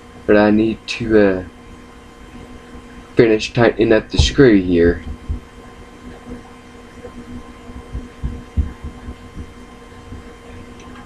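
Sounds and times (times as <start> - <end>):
faint steady hum: 0.0 - 11.0
soft low thuds and knocks: 4.1 - 5.4, 7.8 - 9.6.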